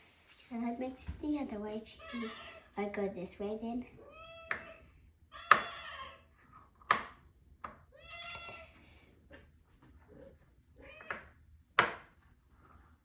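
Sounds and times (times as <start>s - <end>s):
cat meowing: 2.0s - 2.7s, 4.0s - 6.3s, 7.9s - 8.7s, 10.8s - 11.3s.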